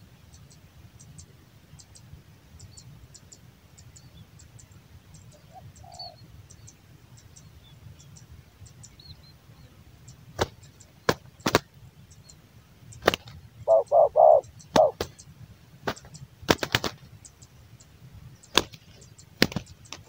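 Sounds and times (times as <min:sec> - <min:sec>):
small birds chirping: 0:00.0 - 0:20.0
dove cooing: 0:05.3 - 0:06.2, 0:13.7 - 0:15.1.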